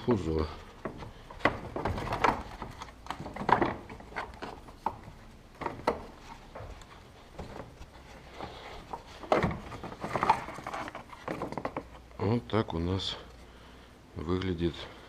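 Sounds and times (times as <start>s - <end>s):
fan shroud knocking and scraping: 0.2s - 12.1s.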